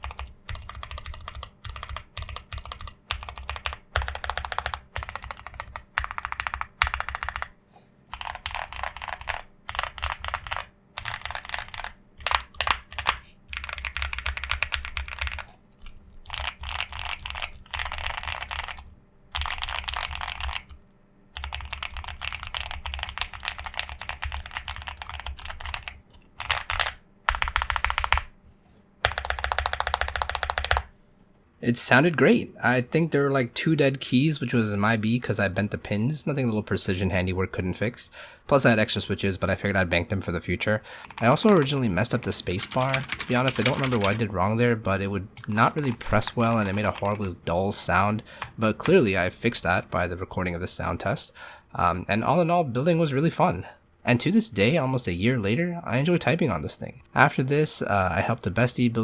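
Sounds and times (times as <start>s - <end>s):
mechanical keyboard typing: 0.0s - 20.8s, 21.4s - 28.3s, 29.0s - 30.9s, 40.5s - 44.4s, 45.0s - 49.1s.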